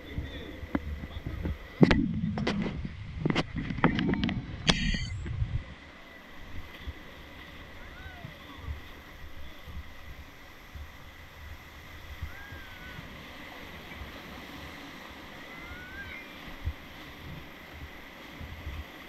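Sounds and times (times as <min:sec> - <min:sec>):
wind buffeting microphone: 0:00.0 - 0:05.8
river water rushing: 0:05.7 - 0:19.0.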